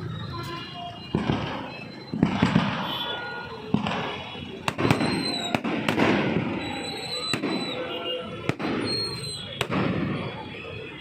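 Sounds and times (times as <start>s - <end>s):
sharp firework cracks: 1.1s - 2.9s, 3.7s - 7.8s, 8.4s - 10.2s.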